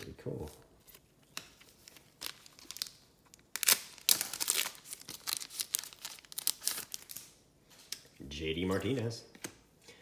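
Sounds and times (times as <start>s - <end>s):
foil wrapper crinkling and tearing: 1.8s - 7.4s.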